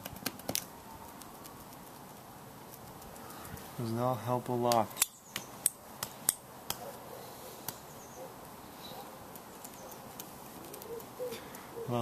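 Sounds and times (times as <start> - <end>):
sharp clicks and taps: 0.0 - 2.0
low steady hiss: 0.0 - 12.0.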